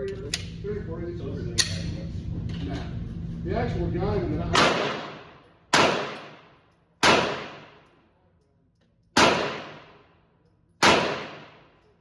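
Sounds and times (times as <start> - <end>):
pistol gunshots: 4.6 - 7.9, 9.2 - 10.1, 10.8 - 11.7.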